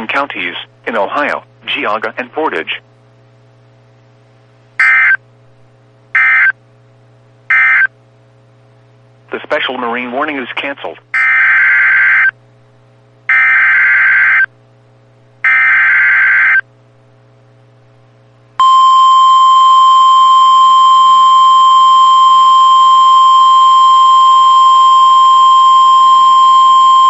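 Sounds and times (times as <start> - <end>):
steady alarm tone: 4.8 - 5.2, 6.2 - 6.5, 7.5 - 7.9, 11.2 - 12.3, 13.3 - 14.5, 15.4 - 16.6, 18.6 - 27.0.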